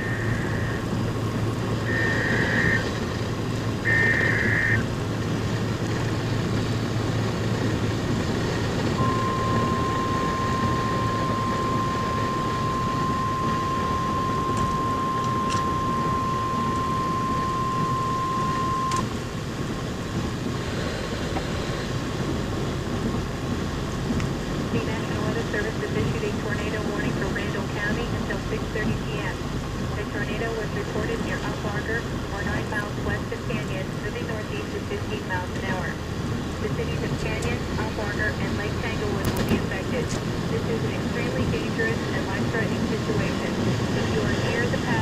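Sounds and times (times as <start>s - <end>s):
steady warning alarm tone: 0.0s - 1.2s, 1.8s - 3.1s, 3.8s - 4.9s, 9.0s - 19.2s
car road and engine noise: 0.0s - 45.0s.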